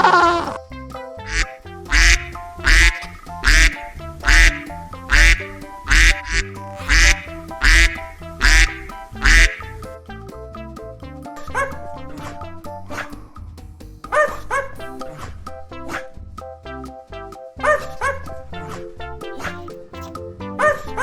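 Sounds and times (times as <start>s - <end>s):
background music: 0.0s - 21.0s
duck quacking: 1.3s - 9.7s.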